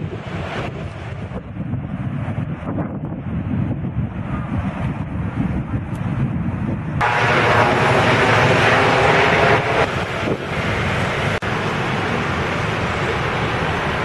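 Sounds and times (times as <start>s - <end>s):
wind buffeting microphone: 0.0s - 14.0s
river water rushing: 7.0s - 14.0s.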